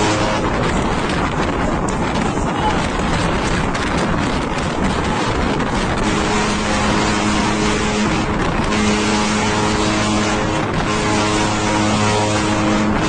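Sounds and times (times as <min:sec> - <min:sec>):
motorboat engine humming: 0:00.0 - 0:13.0
rushing wind: 0:00.0 - 0:13.0
water noise: 0:00.0 - 0:13.0.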